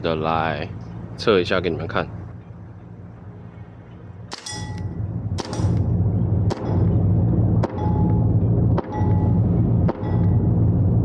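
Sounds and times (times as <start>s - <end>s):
steady low hum: 0.0s - 11.0s
airsoft pistol shots: 4.3s - 4.8s, 5.4s - 5.8s.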